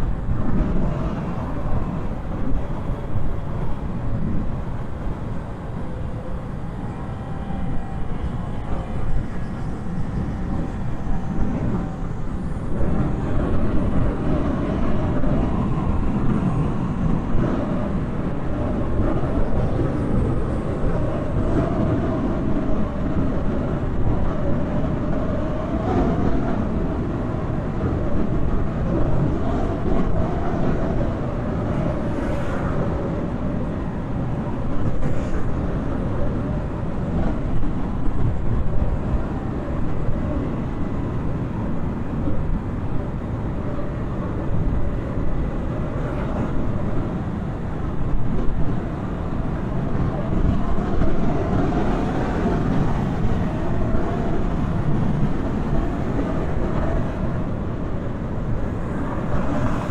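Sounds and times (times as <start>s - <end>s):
wind rush: 0.0s - 59.9s.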